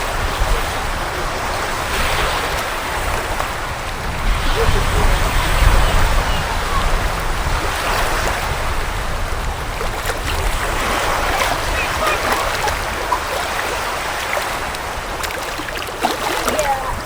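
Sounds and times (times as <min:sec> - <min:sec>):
surf washing on shore: 0:00.0 - 0:17.0.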